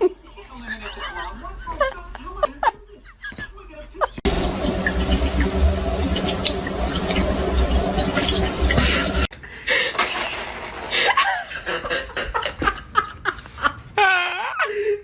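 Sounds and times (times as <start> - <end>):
people laughing: 0.0 - 3.6, 8.8 - 14.9.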